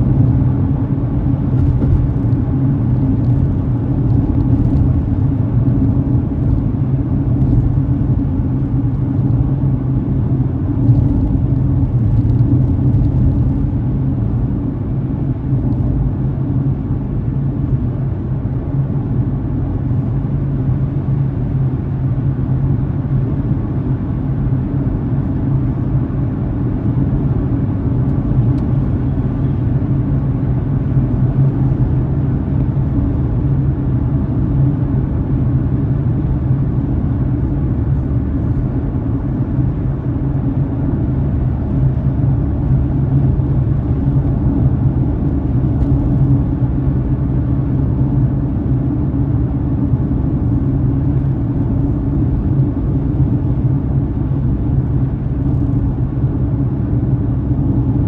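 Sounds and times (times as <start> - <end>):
car engine and tyre noise: 0.0 - 58.0.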